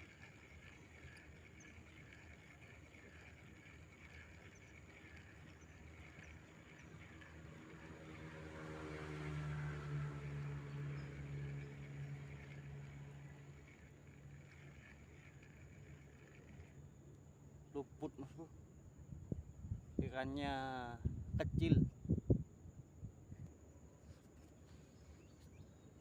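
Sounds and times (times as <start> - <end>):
engine passing: 5.2 - 16.7.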